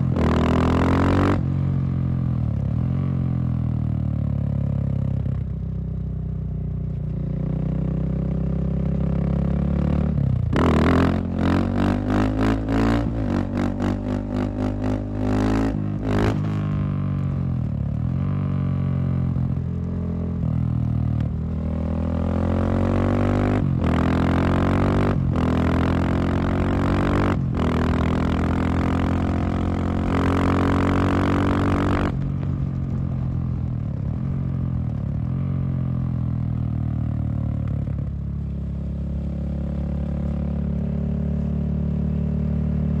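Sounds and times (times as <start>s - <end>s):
motorcycle engine revving: 0.0s - 3.8s, 7.5s - 43.0s.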